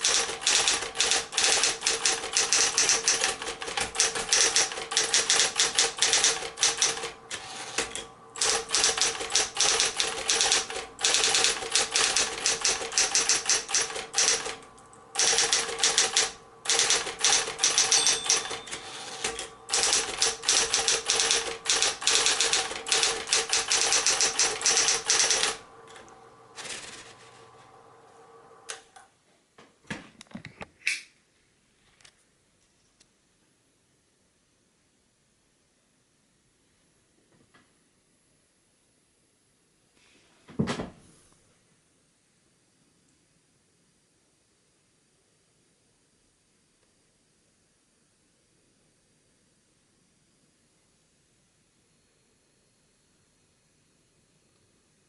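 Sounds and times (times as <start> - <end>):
separate clicks: 0.0 - 26.2
electric typewriter keystrokes: 0.0 - 27.2
typewriter motor humming: 0.0 - 27.5.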